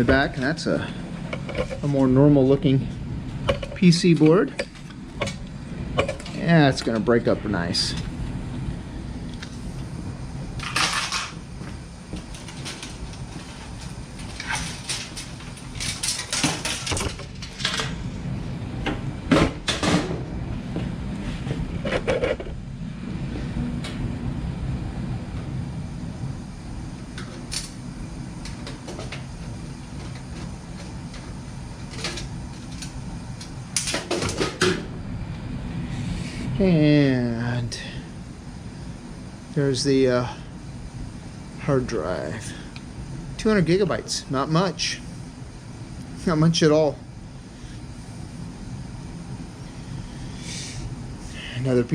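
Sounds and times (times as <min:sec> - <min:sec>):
steady low hum: 0:00.0 - 0:51.9
computer parts knocking and clattering: 0:14.3 - 0:17.9.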